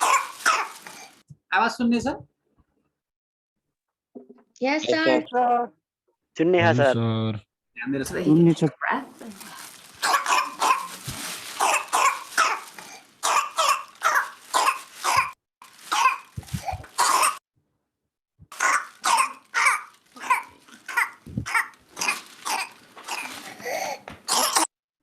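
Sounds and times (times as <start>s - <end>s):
child coughing: 0.0s - 0.9s, 10.0s - 11.0s, 11.6s - 17.4s, 18.6s - 24.7s.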